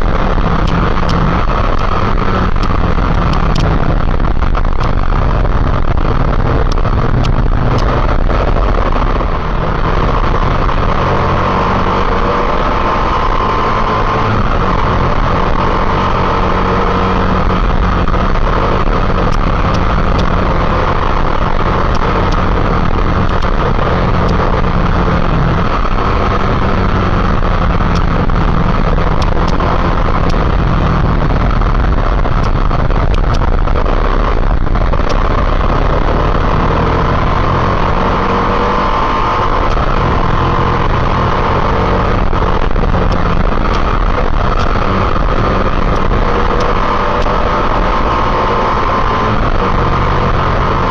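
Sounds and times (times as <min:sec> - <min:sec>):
motorcycle engine running: 0:00.0 - 0:50.9
road noise rushing: 0:00.0 - 0:50.9.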